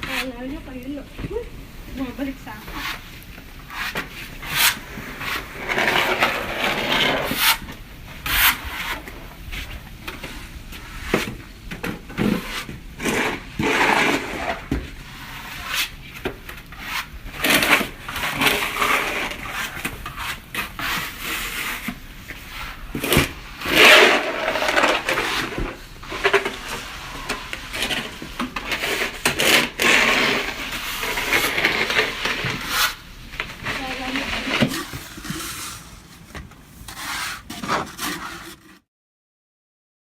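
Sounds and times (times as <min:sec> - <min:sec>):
snow being scraped and crunched: 0:34.7 - 0:38.8.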